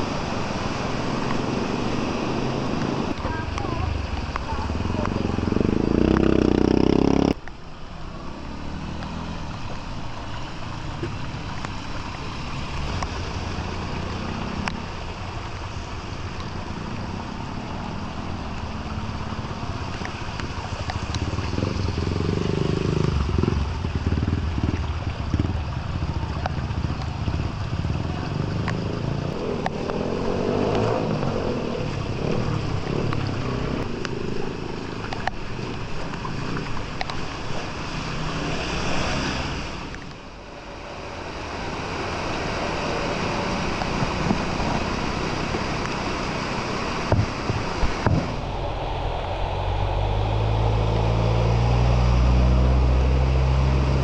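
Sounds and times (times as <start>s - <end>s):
heavy rain: 0.0s - 54.0s
running water: 0.0s - 54.0s
low rumbling: 38.3s - 54.0s
loud low sound: 48.1s - 53.7s.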